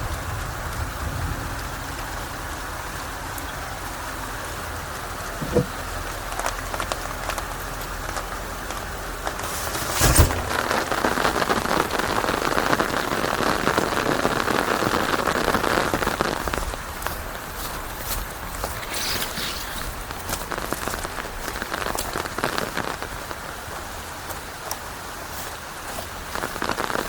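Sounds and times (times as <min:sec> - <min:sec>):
steady rain falling: 0:00.0 - 0:27.0
sharp crack: 0:09.3 - 0:16.8.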